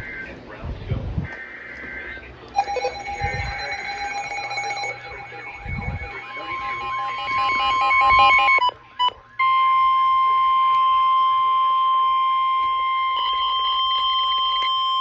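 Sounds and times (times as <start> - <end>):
rapid beeping: 2.6 - 8.8
steady warning alarm tone: 2.6 - 15.0.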